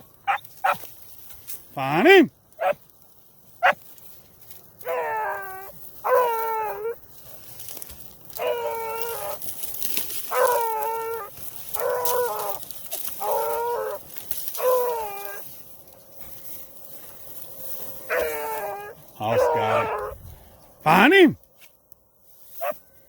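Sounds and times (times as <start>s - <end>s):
dog baying: 4.8s - 7.0s, 8.3s - 9.4s, 10.2s - 15.5s, 17.9s - 20.2s.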